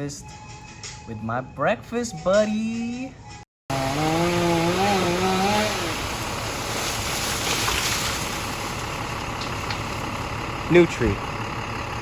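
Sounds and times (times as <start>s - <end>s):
chainsaw running: 3.7s - 11.9s.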